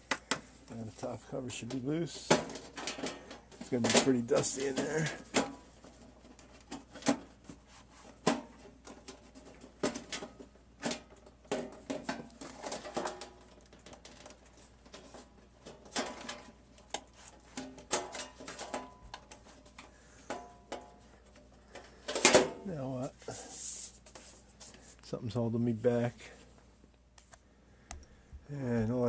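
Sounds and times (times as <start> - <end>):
sheet metal cover clicking and clanking: 1.6 - 7.4, 8.2 - 22.6.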